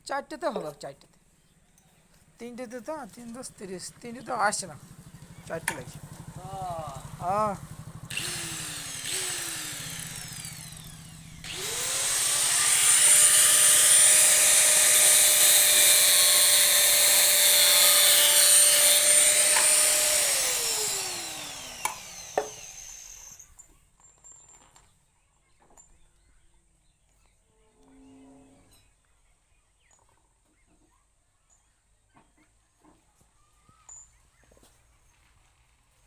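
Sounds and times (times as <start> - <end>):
power tool cutting wood: 5.5 - 23.5.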